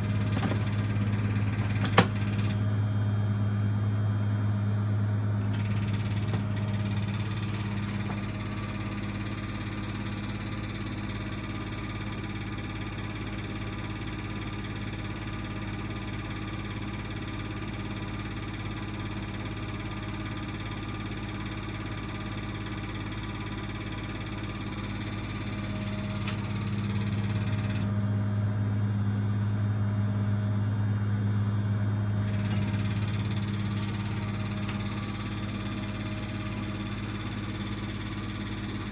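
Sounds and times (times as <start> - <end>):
washing machine spinning: 0.0 - 38.9.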